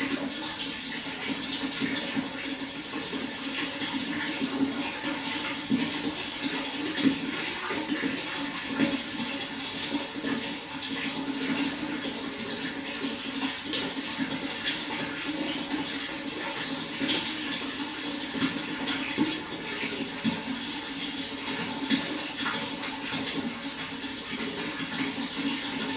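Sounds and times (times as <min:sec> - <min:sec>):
running water with splashes: 0:00.0 - 0:25.9.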